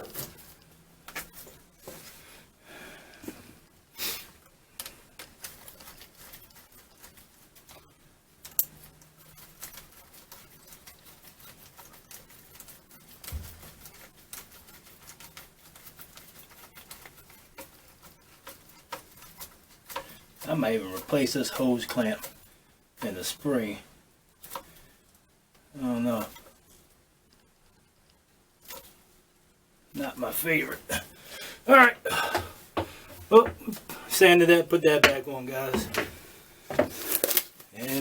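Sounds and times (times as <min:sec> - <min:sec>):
metal clicks and scrapes: 0:32.3 - 0:38.0.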